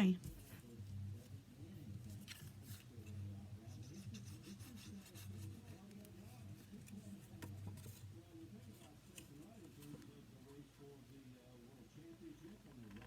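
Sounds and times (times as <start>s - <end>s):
paper rustling and rubbing: 0.2s - 10.2s.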